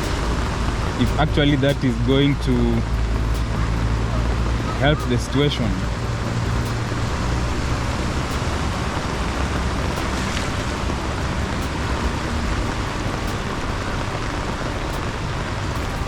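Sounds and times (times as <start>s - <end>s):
floodwater flowing: 0.0s - 16.0s
heavy rain: 0.0s - 16.0s
low rumble: 0.0s - 16.0s.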